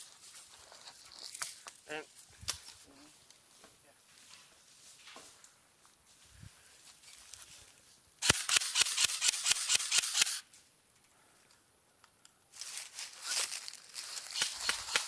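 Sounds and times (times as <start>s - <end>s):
airsoft gun rapid shots: 8.2s - 10.4s, 14.3s - 15.0s.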